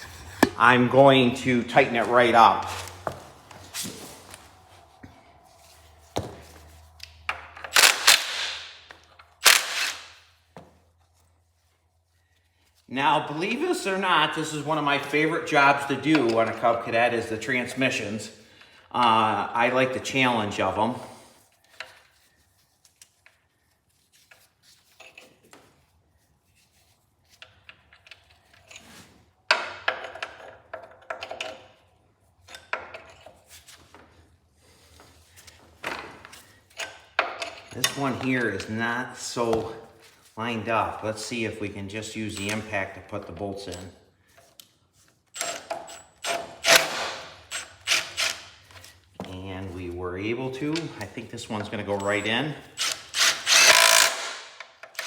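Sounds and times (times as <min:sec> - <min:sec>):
parts clattering: 0:01.7 - 0:10.8
metal tools clinking and scraping: 0:24.2 - 0:25.5, 0:27.3 - 0:29.1, 0:29.8 - 0:33.7, 0:36.3 - 0:38.7.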